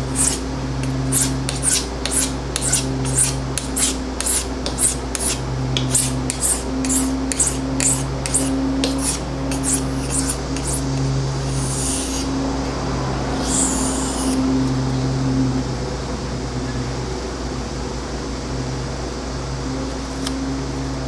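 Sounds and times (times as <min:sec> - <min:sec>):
sanding strokes on a knife: 0:00.0 - 0:12.3, 0:13.3 - 0:14.5.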